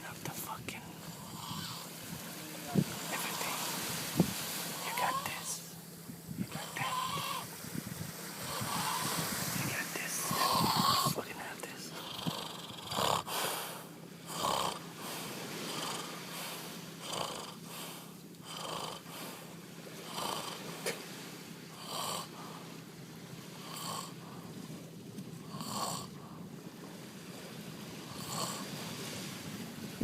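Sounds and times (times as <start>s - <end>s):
steady low hum: 0.0s - 30.0s
man snoring: 1.0s - 1.9s, 6.5s - 7.4s, 8.4s - 14.8s, 15.6s - 16.2s, 17.0s - 19.2s, 20.1s - 20.6s, 21.8s - 22.4s, 23.6s - 24.2s, 25.5s - 26.2s, 28.1s - 28.7s.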